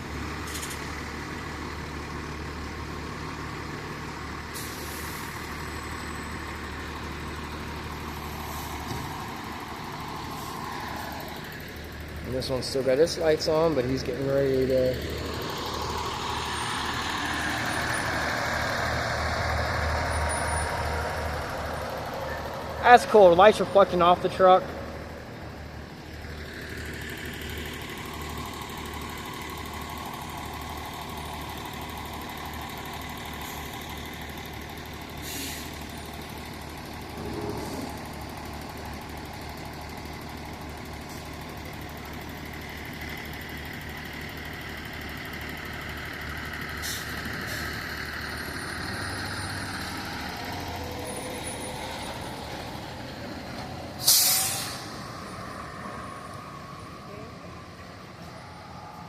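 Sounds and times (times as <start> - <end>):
fire truck idling: 0.0 - 59.0
air brake hissing: 4.6 - 5.4, 35.2 - 35.8, 46.8 - 47.7, 54.0 - 55.0.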